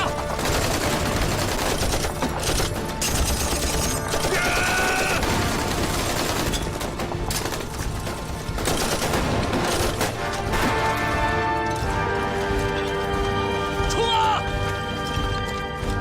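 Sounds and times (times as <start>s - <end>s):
rifle and machine-gun fire: 0.0s - 12.8s
dramatic background music: 0.0s - 16.0s.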